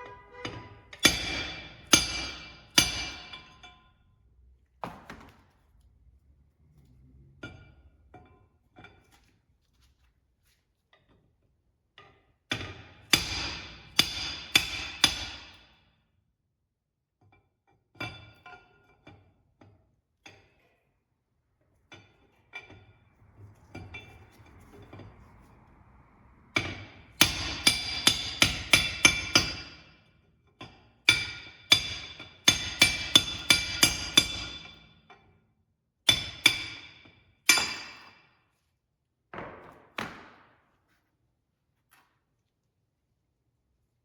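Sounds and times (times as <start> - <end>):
hammer blows on steel: 0.0 - 3.2.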